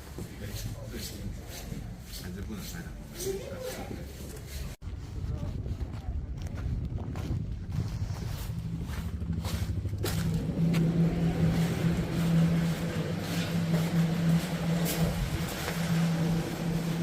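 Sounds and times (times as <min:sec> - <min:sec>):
low mechanical hum: 0:06.8 - 0:17.0.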